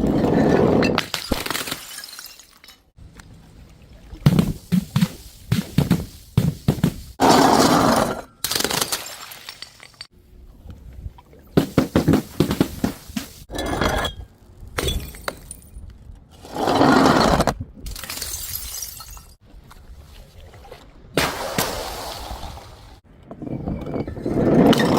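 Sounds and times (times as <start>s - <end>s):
glass bottles shattering: 0.7s - 2.9s, 7.2s - 10.1s, 17.9s - 19.4s
glass shards clinking: 7.3s - 10.1s.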